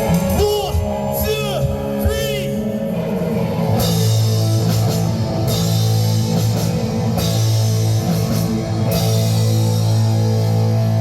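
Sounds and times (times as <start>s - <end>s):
drums and cymbals: 0.0s - 11.0s
electric guitar: 0.0s - 11.0s.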